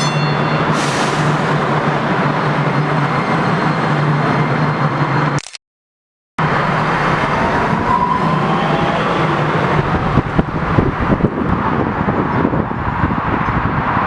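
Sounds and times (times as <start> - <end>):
train rumble: 6.4 - 14.0.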